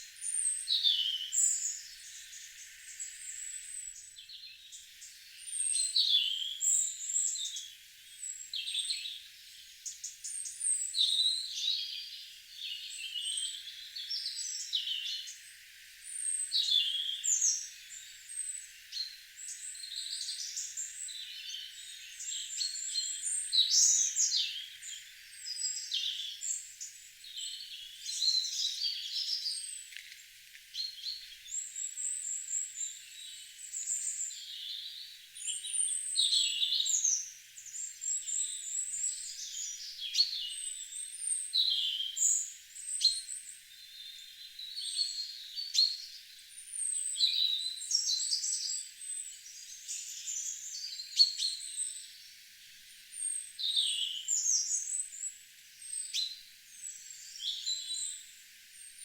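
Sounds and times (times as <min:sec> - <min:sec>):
songbirds chirping and trilling: 0:00.0 - 0:59.0
faint steady hiss: 0:12.3 - 0:47.2, 0:47.8 - 0:59.0.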